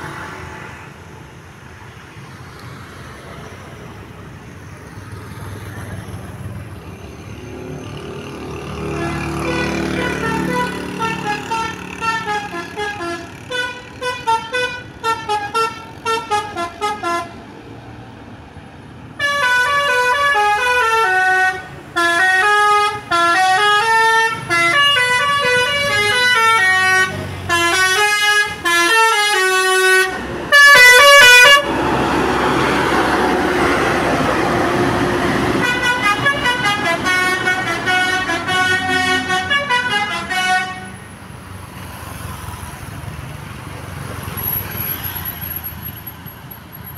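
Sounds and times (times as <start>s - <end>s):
musical bus horn melody: 8.8s - 17.4s, 19.2s - 41.1s.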